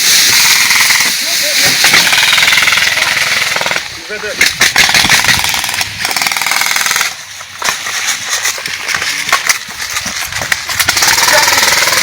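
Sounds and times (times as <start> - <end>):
airsoft guns firing bursts: 0.1 - 3.9, 4.6 - 7.2, 10.7 - 12.0.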